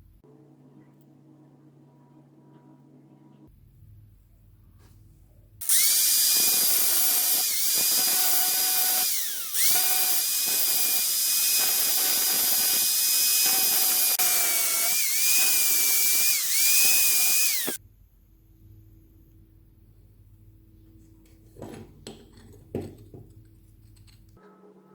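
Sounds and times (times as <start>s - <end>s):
electric drill whining: 5.6s - 17.8s.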